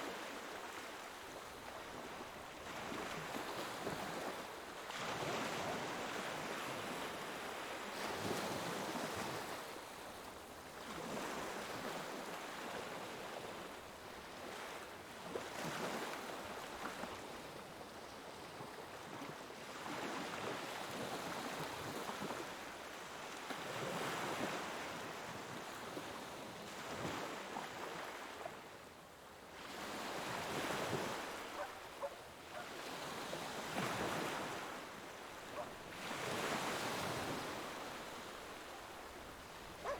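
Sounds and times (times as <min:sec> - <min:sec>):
ocean waves breaking: 0:35.4 - 0:39.9.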